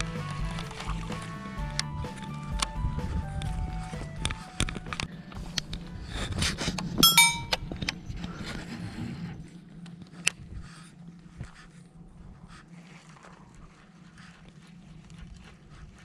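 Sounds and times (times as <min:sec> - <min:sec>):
ringing metallic clink: 0:07.0 - 0:07.6.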